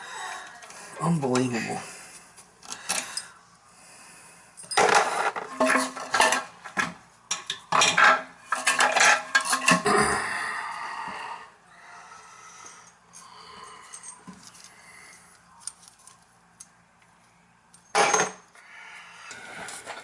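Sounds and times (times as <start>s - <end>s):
metal tools clattering: 4.6s - 6.5s, 7.3s - 9.8s.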